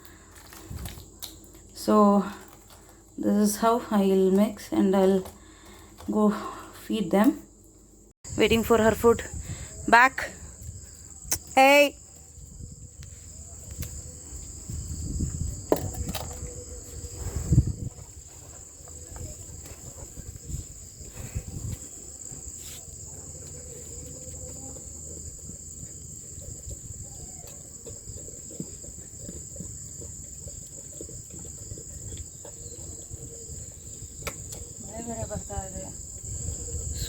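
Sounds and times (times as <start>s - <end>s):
insects chirring: 0.0s - 37.0s
handling thumps and bumps: 13.7s - 37.0s.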